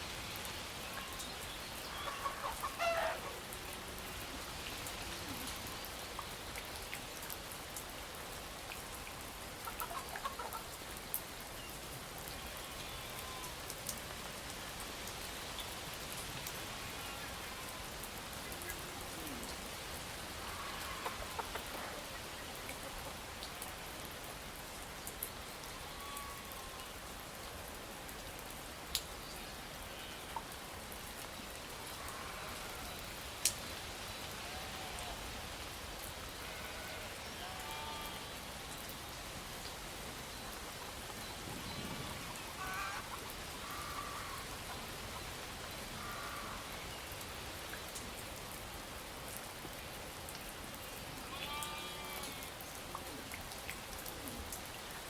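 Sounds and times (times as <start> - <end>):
steady rain: 0.0 - 55.0
chickens clucking: 2.0 - 3.4, 9.6 - 10.7, 20.6 - 22.1.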